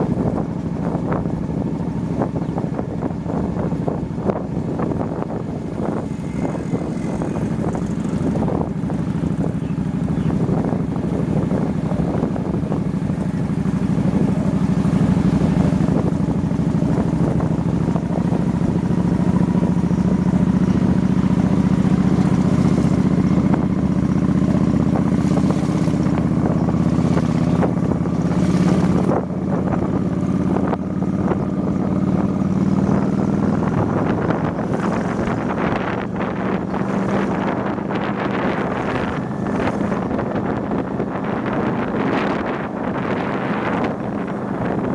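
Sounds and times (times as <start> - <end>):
motorbike engine cruising: 0.0 - 44.9
wind buffeting microphone: 0.0 - 44.9.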